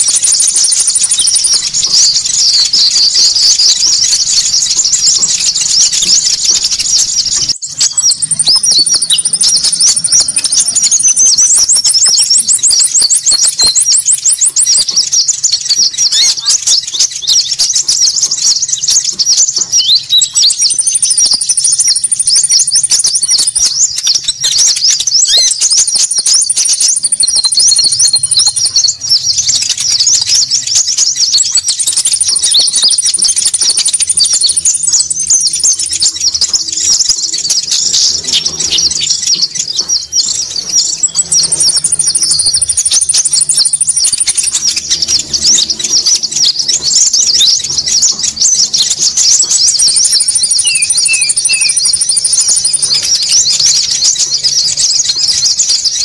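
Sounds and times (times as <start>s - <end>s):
small birds chirping: 0.0s - 56.0s
thin high whistle: 50.6s - 51.8s.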